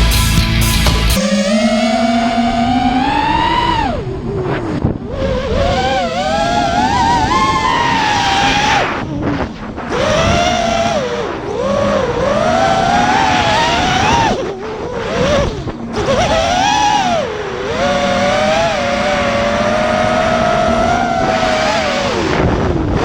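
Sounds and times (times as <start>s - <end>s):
quadcopter propellers whining: 1.0s - 23.0s.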